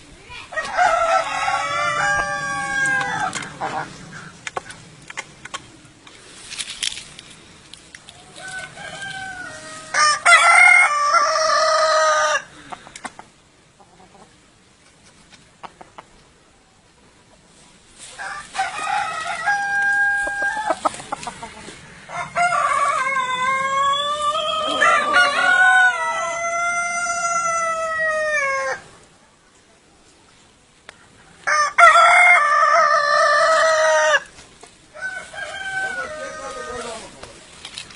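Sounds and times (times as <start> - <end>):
rooster crowing: 0.6 - 3.6, 8.4 - 12.5, 18.2 - 20.8, 21.8 - 28.8, 31.5 - 34.3, 34.9 - 37.1.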